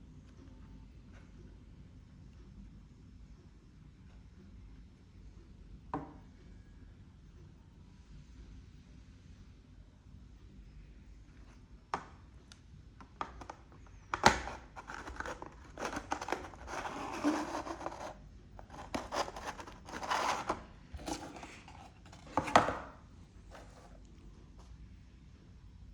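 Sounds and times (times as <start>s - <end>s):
packaging clicks and taps: 13.0s - 22.8s
packaging rustling and crinkling: 14.2s - 22.6s.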